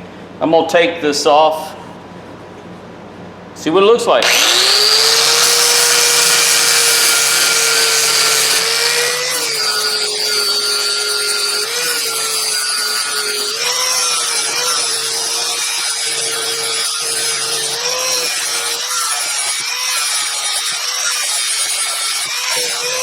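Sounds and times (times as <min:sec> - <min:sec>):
belt sander motor hum: 0:04.2 - 0:18.8
metal grinding hiss: 0:04.2 - 0:23.0.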